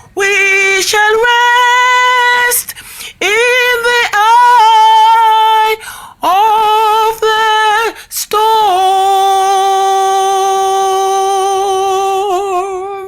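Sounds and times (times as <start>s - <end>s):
woman singing a long note: 3.2s - 13.0s.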